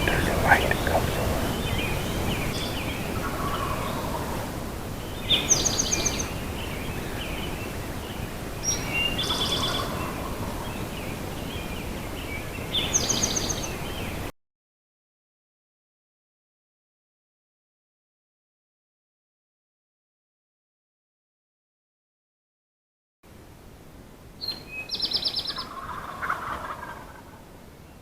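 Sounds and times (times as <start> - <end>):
birds chirping: 0.0 - 14.3
steady background hiss: 0.0 - 14.3, 23.3 - 28.0.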